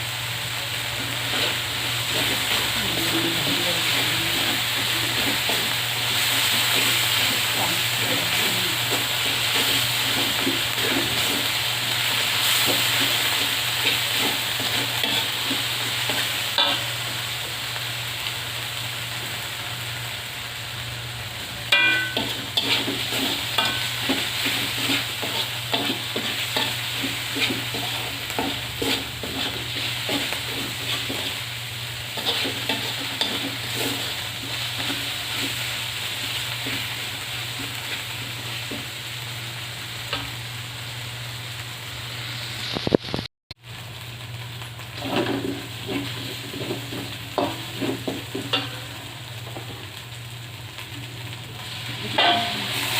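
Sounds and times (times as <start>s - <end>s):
food sizzling in a pan: 0.0s - 52.9s
metal spatula scraping a pan: 1.0s - 17.0s, 21.7s - 38.0s, 45.0s - 49.7s, 52.0s - 52.9s
sharp ringing clank: 21.8s - 22.3s.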